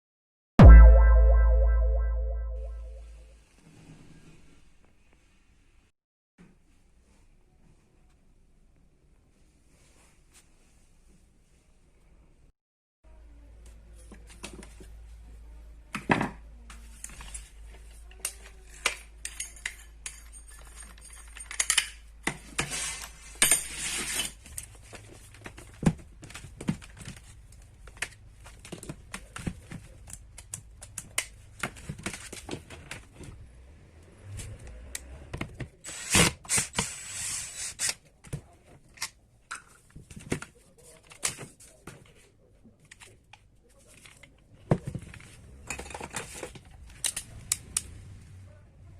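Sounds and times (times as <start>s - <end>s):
clatter of small parts and tools: 16.1s - 33.3s, 42.8s - 47.9s.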